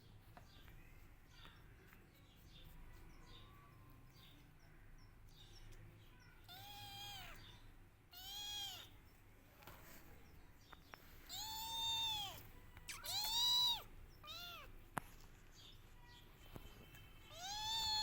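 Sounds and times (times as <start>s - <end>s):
kitten meowing: 6.5s - 7.4s, 8.1s - 8.9s, 11.3s - 14.8s, 17.3s - 18.0s.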